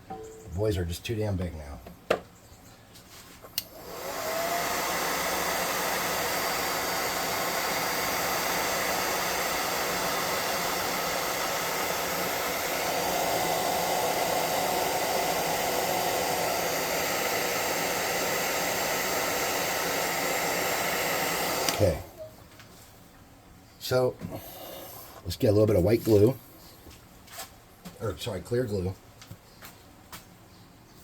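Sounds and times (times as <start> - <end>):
hair dryer blowing: 3.5 - 22.3
hair dryer switch click: 3.6 - 4.7, 21.2 - 21.9.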